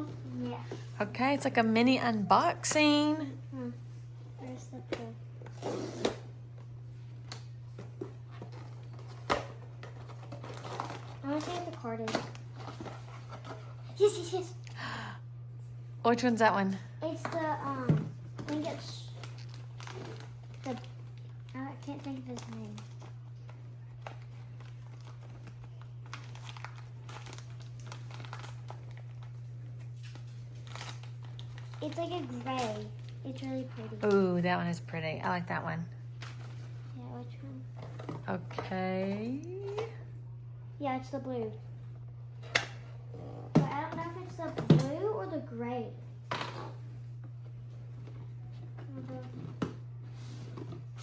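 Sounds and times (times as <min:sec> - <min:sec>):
steady low hum: 0:00.0 - 0:51.0
plastic packaging crinkling: 0:07.9 - 0:14.2, 0:18.3 - 0:34.2.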